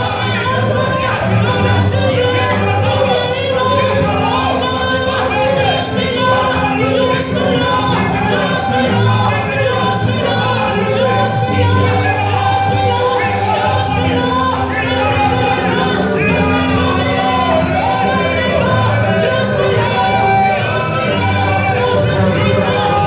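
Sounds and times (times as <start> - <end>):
gospel singing with band: 0.0 - 23.0.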